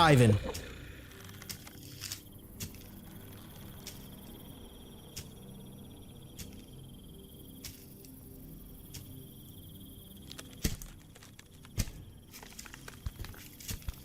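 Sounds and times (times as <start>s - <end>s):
low hum: 0.0s - 1.9s
insect trilling: 0.0s - 5.3s.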